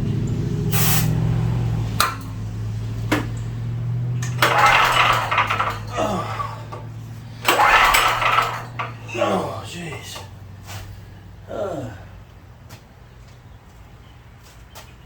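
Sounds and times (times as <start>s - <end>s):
spray can hissing: 0.7s - 1.1s
recoil starter pulls: 1.8s - 10.9s
clicks: 4.2s - 9.2s.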